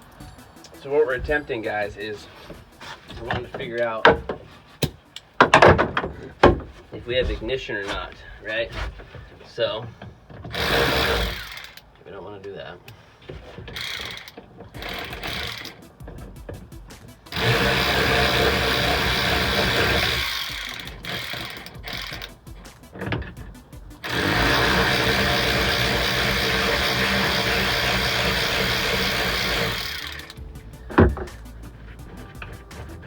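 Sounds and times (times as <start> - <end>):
power tool motor running: 10.5 - 11.8, 13.7 - 33.0.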